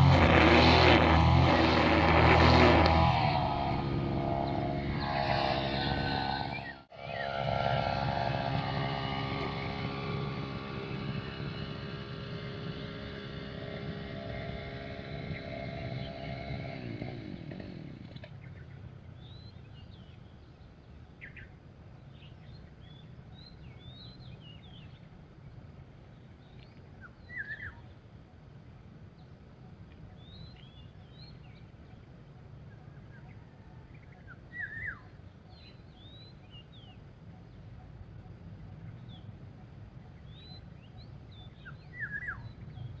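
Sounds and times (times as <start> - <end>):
low background rumble: 0.0 - 43.0
birds chirping and whistling: 2.9 - 20.5, 26.4 - 27.9, 30.1 - 31.7, 32.8 - 37.9, 40.0 - 43.0.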